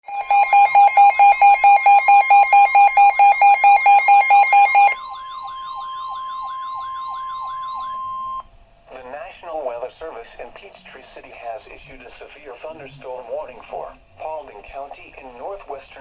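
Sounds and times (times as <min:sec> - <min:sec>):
alarm beeping rapidly: 0:00.0 - 0:08.4
steady high tone: 0:00.1 - 0:08.5.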